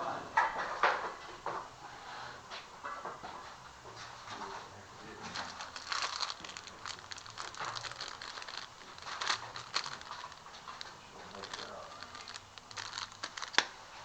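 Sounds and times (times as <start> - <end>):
packaging rustling and crinkling: 4.4 - 14.0.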